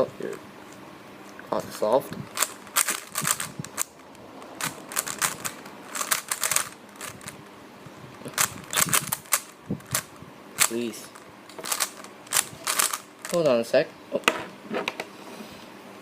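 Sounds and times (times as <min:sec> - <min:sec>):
plastic puzzle cube clicking: 0:04.6 - 0:07.3, 0:08.3 - 0:10.7, 0:11.6 - 0:13.4.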